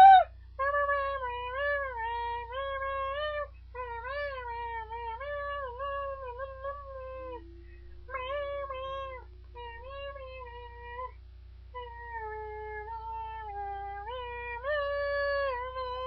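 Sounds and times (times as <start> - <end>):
cat yowling: 0.0 - 7.5
steady low hum: 0.0 - 16.0.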